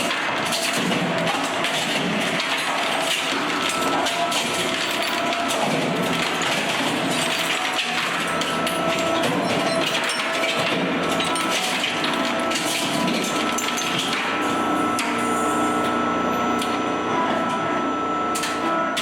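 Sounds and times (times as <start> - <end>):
metal rattling and clattering: 0.0 - 14.5
industrial shredder running: 0.0 - 19.0.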